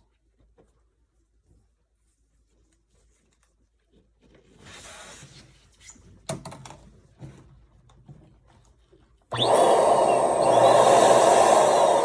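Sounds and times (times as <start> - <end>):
electric balloon pump whining: 9.3 - 12.0.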